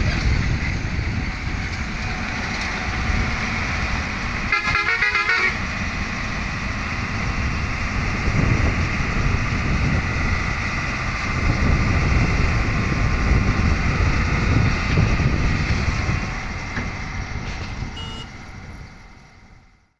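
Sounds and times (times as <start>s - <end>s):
diesel machinery rumbling: 0.0s - 19.9s.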